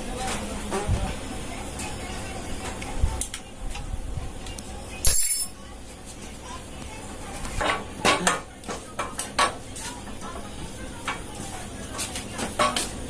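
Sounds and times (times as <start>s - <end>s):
metal tools and parts clinking: 5.0s - 5.6s.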